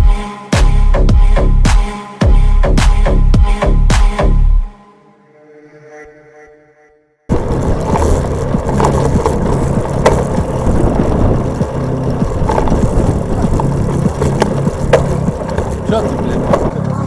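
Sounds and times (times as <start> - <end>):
low wavering hum: 7.3 - 17.0
vehicle rolling and rattling on road: 7.3 - 17.0.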